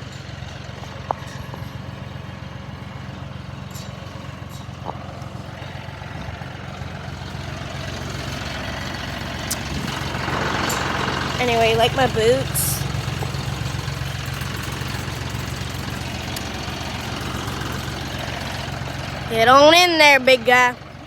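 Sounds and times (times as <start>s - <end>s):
engine humming: 0.0s - 21.0s.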